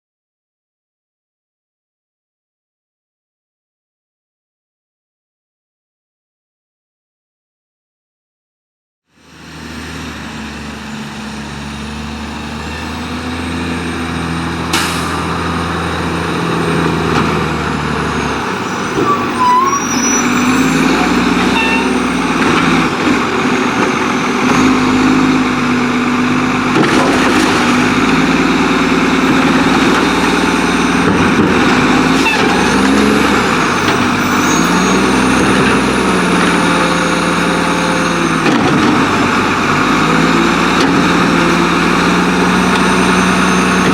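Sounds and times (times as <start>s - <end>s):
diesel truck engine revving: 9.2s - 43.9s.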